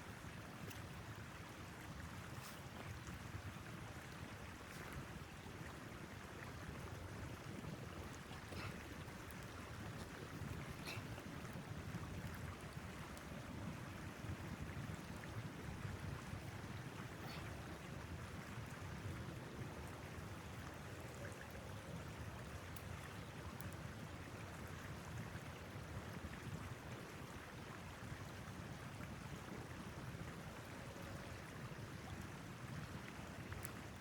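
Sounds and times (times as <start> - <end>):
faint ticks: 33.6 - 33.8.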